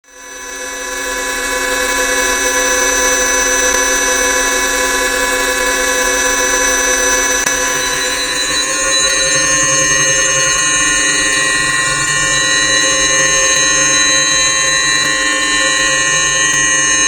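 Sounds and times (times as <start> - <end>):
chord of electronic beep tones: 6.2 - 16.6.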